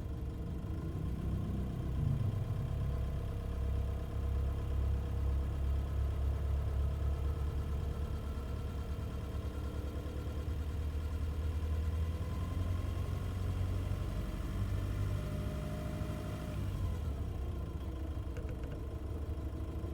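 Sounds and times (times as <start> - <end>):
engine droning at low revs: 0.0 - 5.4.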